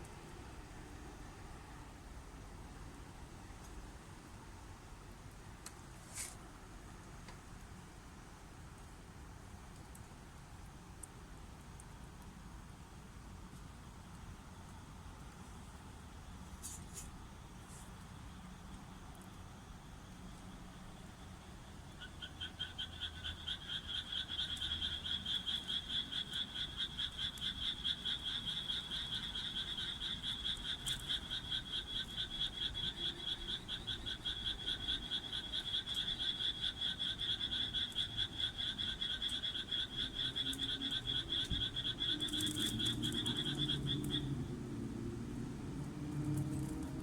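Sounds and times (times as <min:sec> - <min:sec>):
frog croaking: 0:21.4 - 0:44.9.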